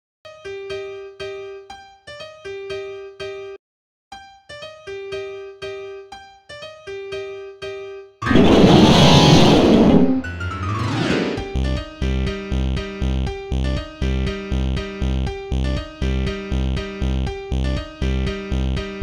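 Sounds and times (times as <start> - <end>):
midi ringtone melody: 8.2 - 11.6
dense wall of midi notes: 8.2 - 11.7.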